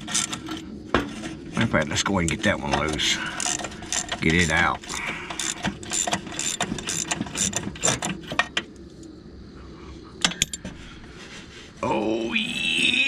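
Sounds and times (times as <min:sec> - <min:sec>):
ratchet wrench clicking: 0:03.4 - 0:08.2.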